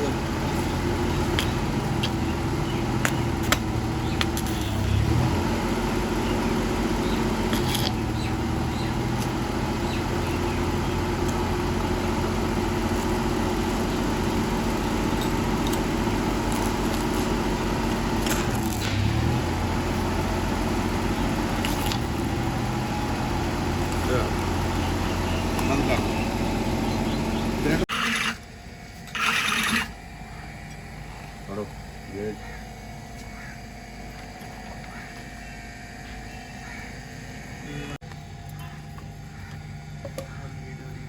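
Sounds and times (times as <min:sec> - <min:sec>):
car engine idling: 0:00.0 - 0:27.9, 0:30.1 - 0:41.0.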